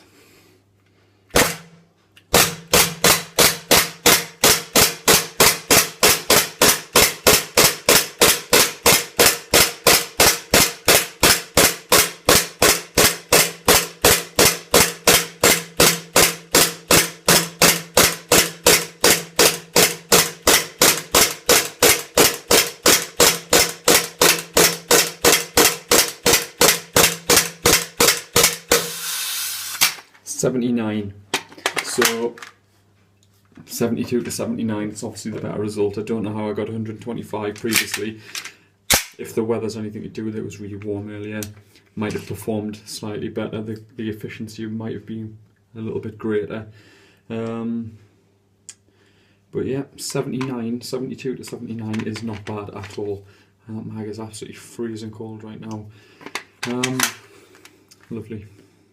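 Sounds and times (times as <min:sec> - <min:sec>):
airsoft pistol shots: 0:01.3 - 0:29.0, 0:38.9 - 0:39.2.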